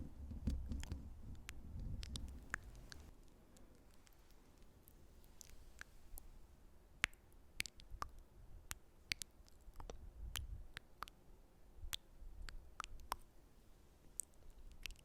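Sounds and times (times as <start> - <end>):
wet mouth clicks and pops: 0.5 - 3.1, 7.0 - 11.2, 11.9 - 13.3, 14.2 - 15.0.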